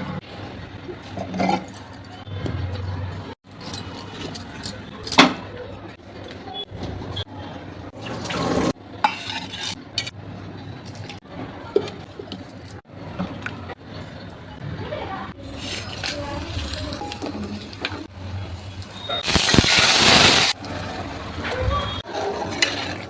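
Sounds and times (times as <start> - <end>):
metal utensils scraping a pot: 8.2 - 10.2, 22.1 - 23.0.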